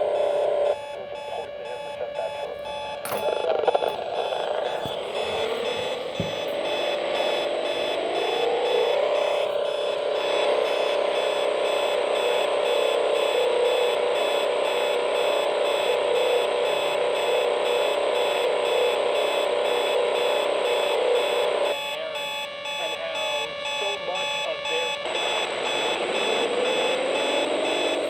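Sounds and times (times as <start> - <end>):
steady tones: 0.0 - 12.2
pulsing electronic drone and buzz: 0.0 - 21.8, 24.6 - 28.0.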